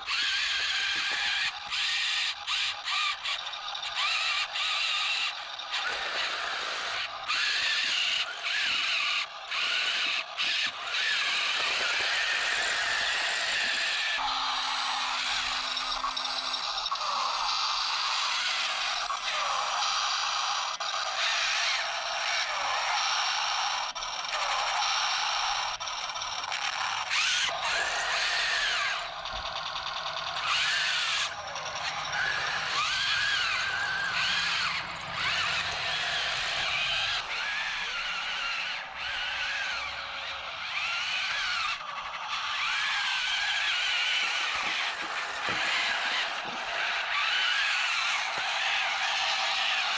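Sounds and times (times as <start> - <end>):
small electric motors whining: 0.0 - 49.9
mechanical rattle: 24.0 - 41.0.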